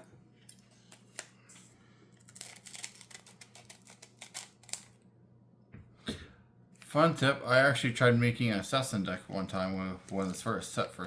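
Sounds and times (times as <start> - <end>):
card pack crinkles and clicks: 2.2 - 5.0.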